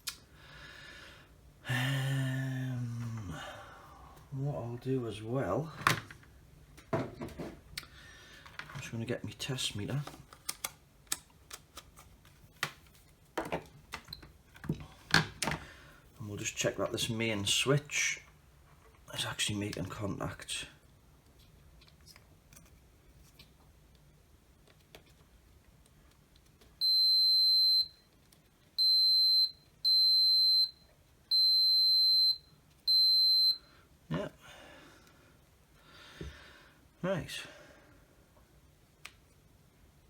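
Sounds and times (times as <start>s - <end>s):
multimeter continuity beeps: 26.8s - 28.1s, 28.8s - 33.7s.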